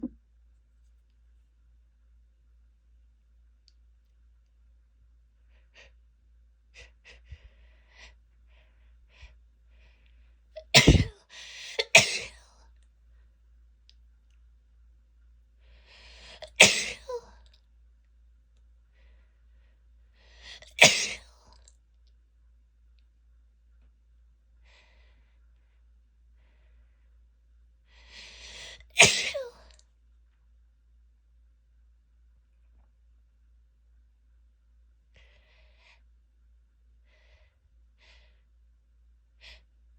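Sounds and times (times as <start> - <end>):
woman sneezing: 10.6 - 12.4, 16.4 - 17.3, 20.8 - 21.2, 29.0 - 29.6.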